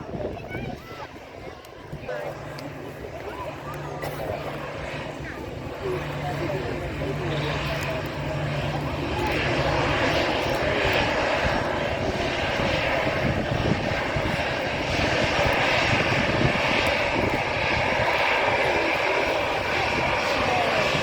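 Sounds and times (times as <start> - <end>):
jet engines rushing: 0.0 - 21.0.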